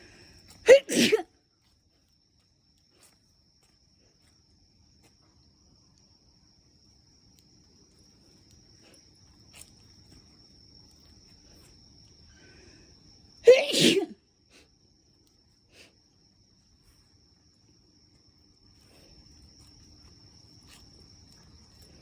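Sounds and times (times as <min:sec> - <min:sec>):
insects trilling: 0:00.0 - 0:22.0
person sneezing: 0:00.6 - 0:01.3, 0:13.4 - 0:14.2.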